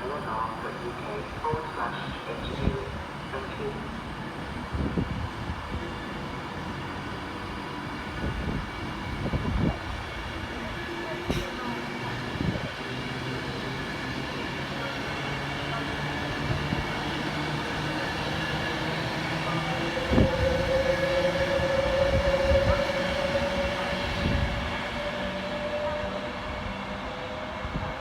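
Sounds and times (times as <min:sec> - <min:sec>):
train low hum: 0:00.0 - 0:28.0
held whine: 0:19.3 - 0:26.8.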